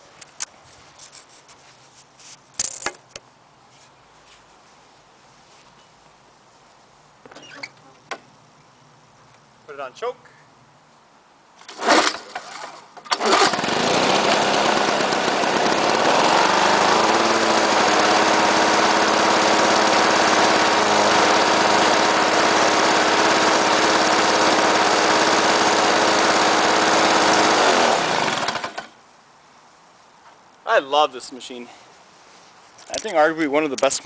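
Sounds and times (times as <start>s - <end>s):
lawn mower pull-start: 11.6s - 29.0s
lawn mower engine running: 11.7s - 28.9s.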